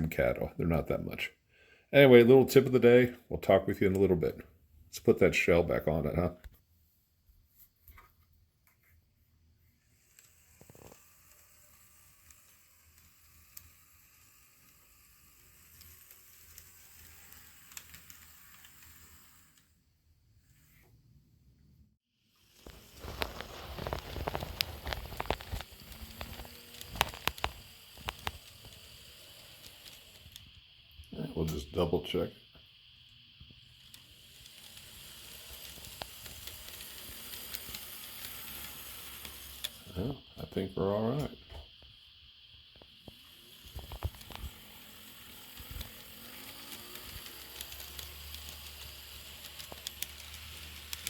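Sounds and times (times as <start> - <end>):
model locomotive whirring: 9.6 - 19.8, 22.2 - 51.0
sharp plastic clicks: 43.7 - 51.0.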